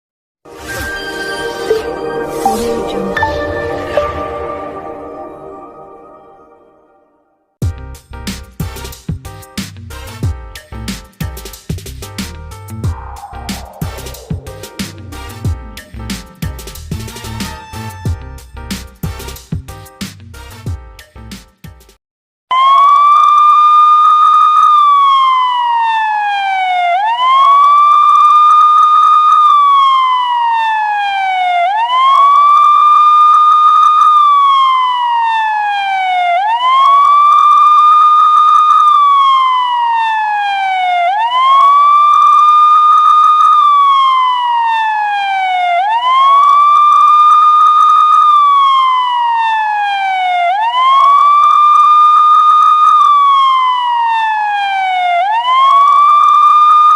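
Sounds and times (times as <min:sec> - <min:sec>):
police siren wailing: 0:12.8 - 0:15.2, 0:22.5 - 0:56.9.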